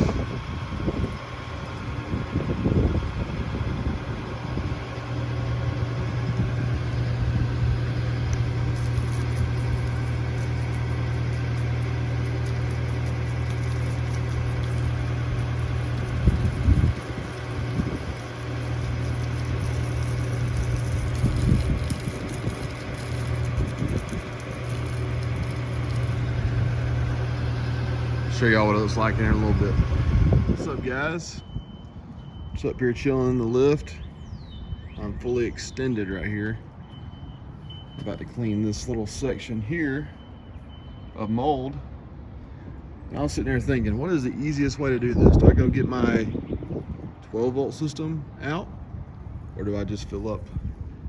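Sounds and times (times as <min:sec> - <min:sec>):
engine running steadily: 0:00.0 - 0:51.0.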